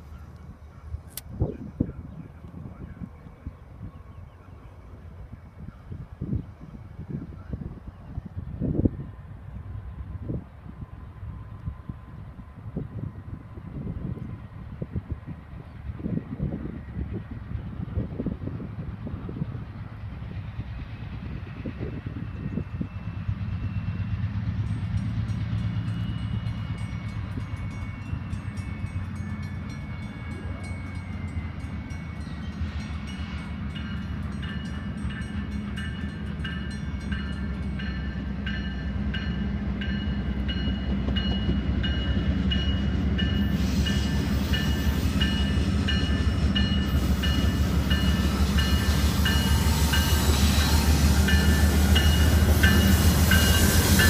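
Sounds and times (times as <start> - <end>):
diesel train engine drone: 0.0 - 54.0.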